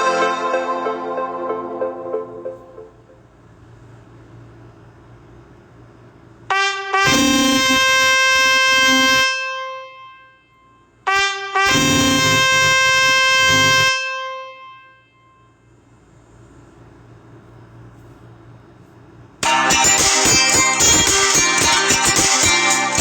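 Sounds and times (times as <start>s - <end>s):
phone ringtone: 19.4s - 23.0s.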